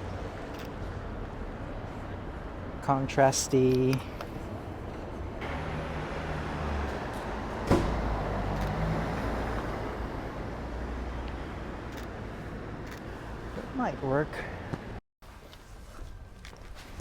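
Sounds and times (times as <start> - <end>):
vehicle engine hum: 0.0 - 15.0.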